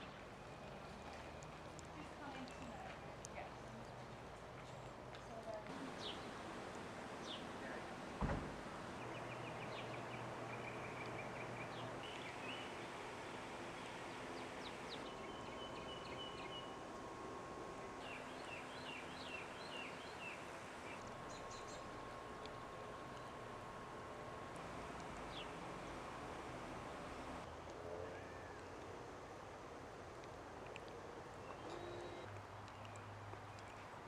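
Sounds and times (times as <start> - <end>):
small birds chirping: 0.0 - 27.5, 30.8 - 33.9
faint steady hum: 0.0 - 34.0
outdoor background noise: 0.0 - 34.0
sharp thump: 8.2 - 8.6.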